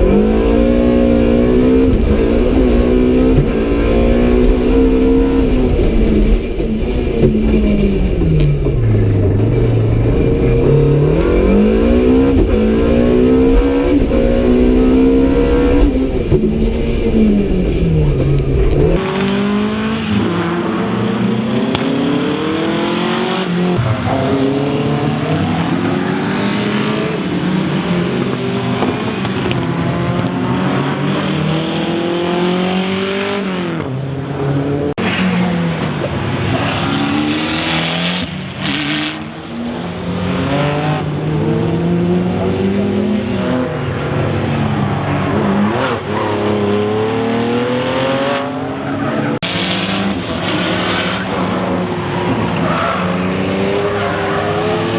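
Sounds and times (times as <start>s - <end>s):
heavy low rumble: 0.0s - 19.7s
rally car engine revving: 0.0s - 54.9s.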